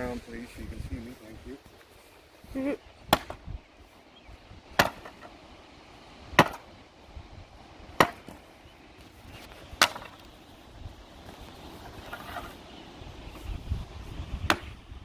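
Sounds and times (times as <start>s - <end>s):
tool striking wooden pallet: 4.8s - 5.3s, 6.4s - 6.6s.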